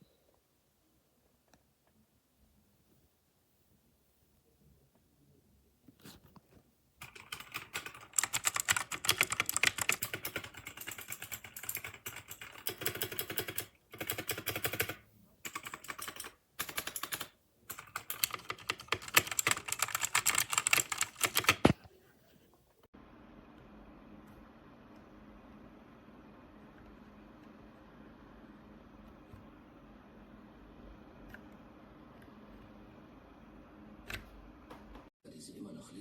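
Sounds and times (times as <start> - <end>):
typing on mechanical keyboard: 7.0 - 21.8.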